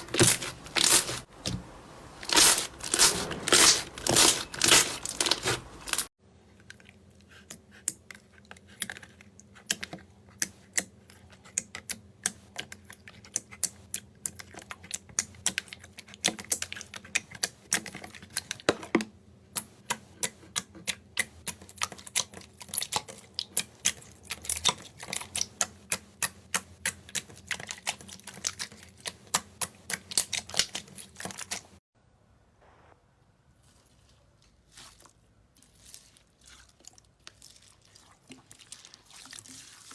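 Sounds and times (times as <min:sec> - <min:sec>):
dense crunching: 0:00.0 - 0:06.1.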